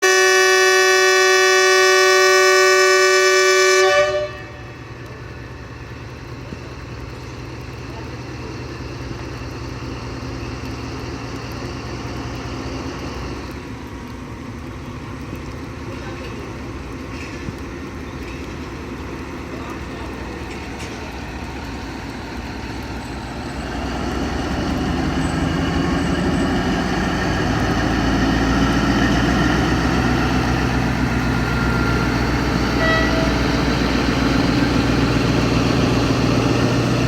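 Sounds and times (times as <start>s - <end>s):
locomotive horn blast: 0.0s - 5.0s, 31.6s - 33.9s
locomotive engine rumbling: 0.0s - 37.0s.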